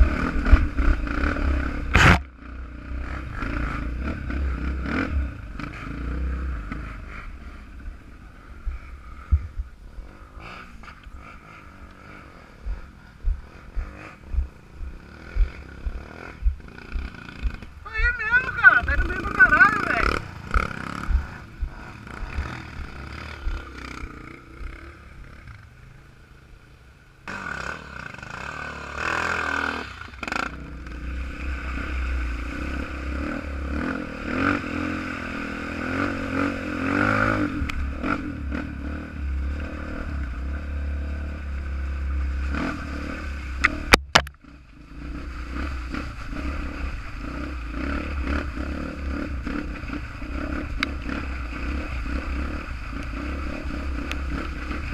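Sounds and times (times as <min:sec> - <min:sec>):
dirt bike engine revving: 0:00.0 - 0:26.1, 0:27.2 - 0:54.9.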